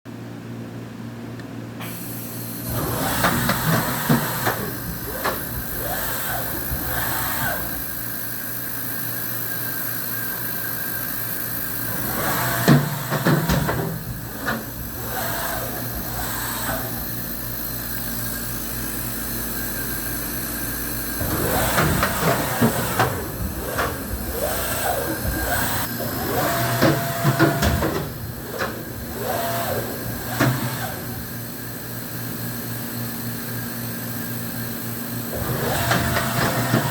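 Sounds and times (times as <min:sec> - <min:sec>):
machining center humming: 0:00.9 - 0:36.9
machine whine: 0:01.8 - 0:36.9
machine parts clicking and clunking: 0:02.7 - 0:07.9, 0:11.9 - 0:17.2, 0:21.2 - 0:31.1, 0:35.3 - 0:36.9.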